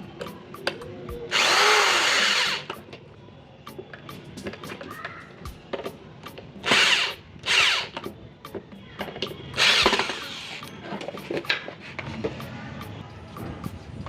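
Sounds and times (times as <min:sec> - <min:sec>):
electric drill running: 0:01.3 - 0:02.7, 0:06.6 - 0:08.0, 0:09.6 - 0:10.6.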